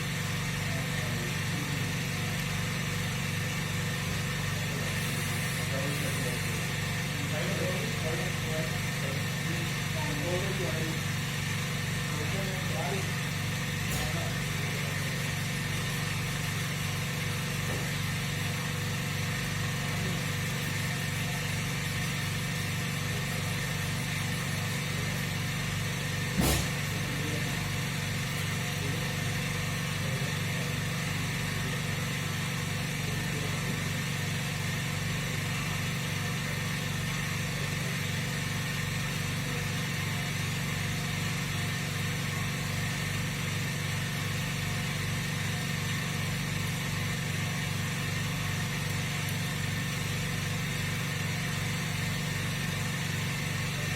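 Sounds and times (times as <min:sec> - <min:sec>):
sharp click: 0:26.4 - 0:26.8.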